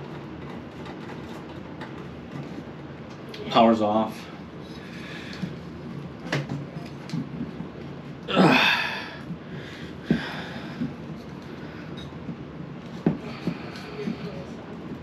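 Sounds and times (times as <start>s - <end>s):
clicks and knocks handling fan: 6.2s - 7.8s.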